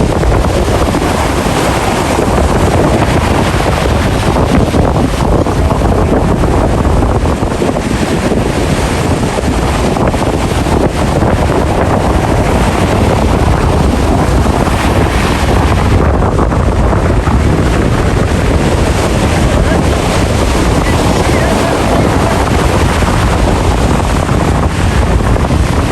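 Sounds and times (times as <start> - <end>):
ocean waves: 0.0 - 25.9
wind buffeting microphone: 0.0 - 25.9.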